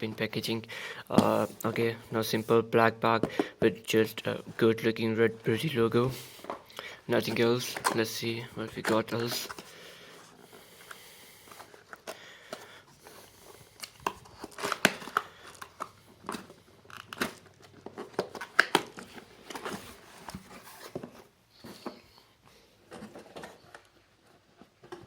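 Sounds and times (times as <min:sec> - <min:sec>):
packaging crinkling and rustling: 0:05.5 - 0:22.1.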